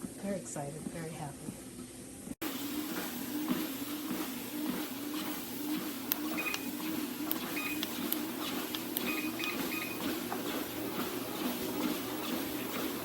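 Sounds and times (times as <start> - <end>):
treadmill motor and belt humming: 2.2 - 13.0
short high electronic beeps: 6.3 - 6.7, 7.5 - 7.8, 9.0 - 10.0.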